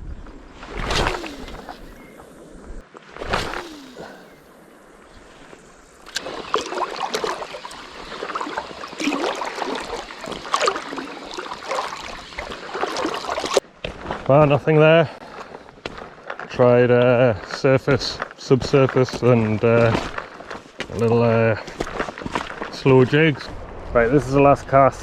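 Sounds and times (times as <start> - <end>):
sea water washing against shore: 0.0 - 13.6.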